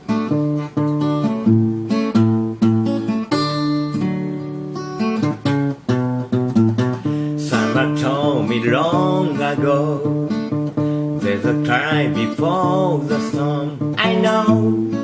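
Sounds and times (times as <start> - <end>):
acoustic guitar strumming: 0.0 - 15.0
person singing: 7.3 - 15.0.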